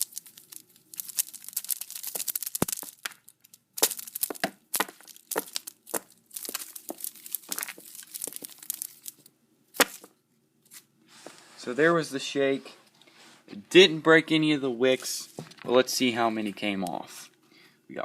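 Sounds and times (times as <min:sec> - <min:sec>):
paper firecrackers rattling: 0:00.0 - 0:10.1.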